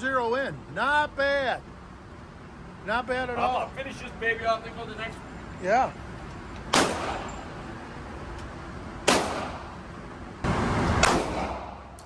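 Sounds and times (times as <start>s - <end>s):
gunshots echoing indoors: 11.0s - 11.9s.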